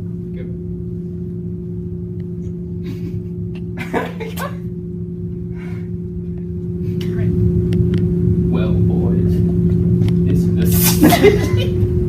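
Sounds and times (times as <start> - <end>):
low hum: 0.0 - 12.0
person breathing: 5.5 - 6.0.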